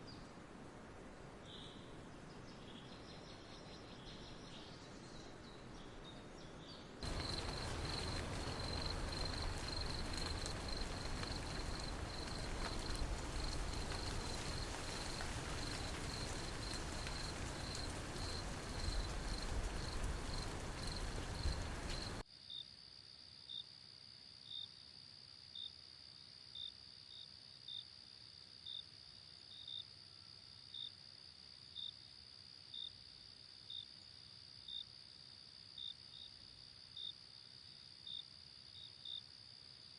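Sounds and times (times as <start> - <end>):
high insect trill: 7.0 - 22.2
insects chirping: 7.0 - 22.2.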